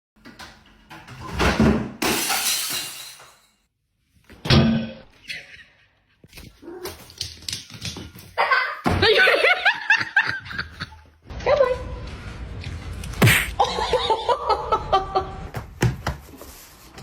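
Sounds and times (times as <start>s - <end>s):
something breaking and shattering: 1.5s - 3.5s.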